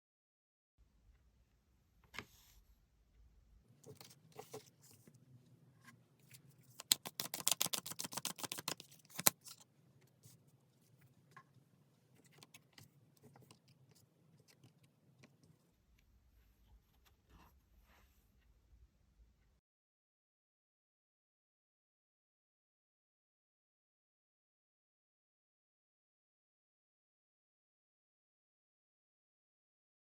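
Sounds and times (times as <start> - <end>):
cards shuffling and clicking: 3.9 - 4.7, 6.4 - 9.6.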